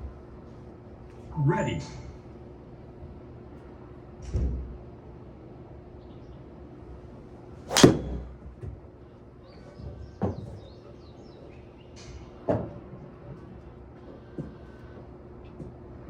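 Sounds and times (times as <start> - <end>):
golf club striking ball: 7.7 - 8.4.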